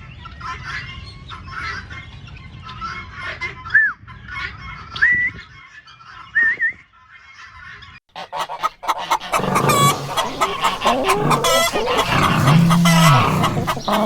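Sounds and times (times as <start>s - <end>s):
chatter of bird calls: 8.2s - 14.0s.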